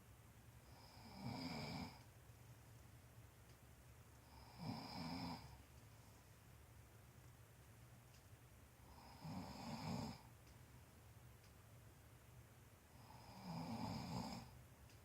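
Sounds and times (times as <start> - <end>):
man snoring: 0.7 - 2.0, 4.2 - 5.6, 8.9 - 10.2, 13.0 - 14.5.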